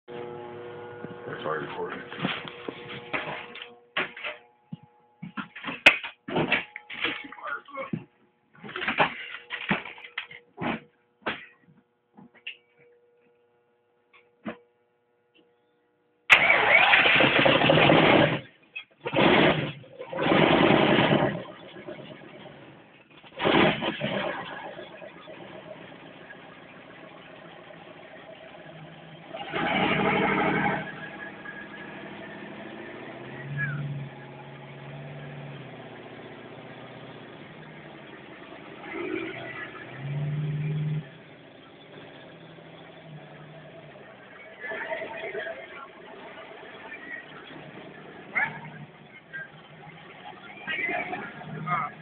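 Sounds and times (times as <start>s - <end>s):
engine cranking: 16.3s - 52.0s.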